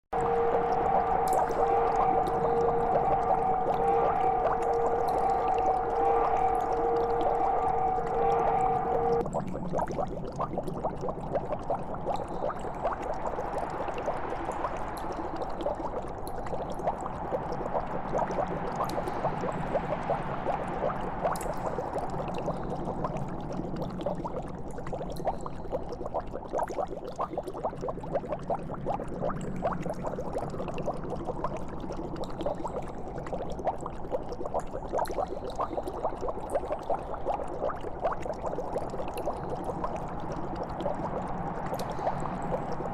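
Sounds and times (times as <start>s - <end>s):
droning tone: 0.0s - 9.3s
liquid bubbling: 0.0s - 42.9s.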